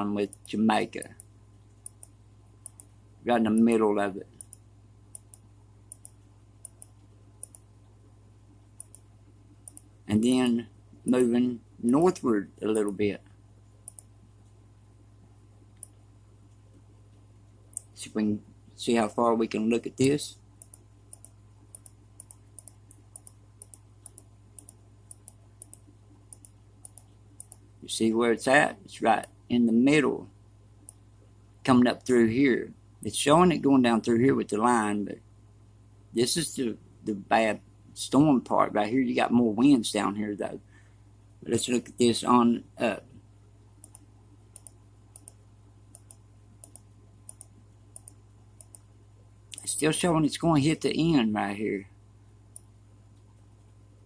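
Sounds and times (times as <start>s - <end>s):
low electrical hum: 0.0s - 54.0s
computer mouse clicking: 1.2s - 2.9s, 4.4s - 7.7s, 8.8s - 9.9s, 13.8s - 14.1s, 20.6s - 27.7s, 43.8s - 48.9s, 52.5s - 53.7s.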